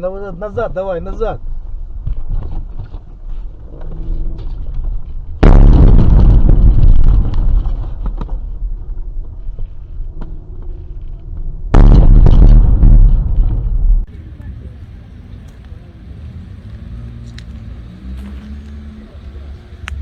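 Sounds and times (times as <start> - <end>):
loud explosions with rumble: 5.4 - 9.4, 11.7 - 15.7.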